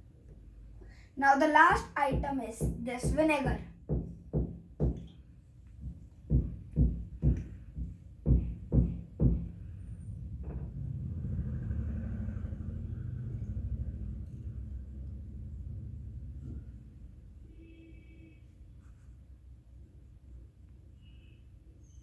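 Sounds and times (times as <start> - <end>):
bottle knocks and glugs: 2.6 - 5.2
low rumble: 9.6 - 17.2.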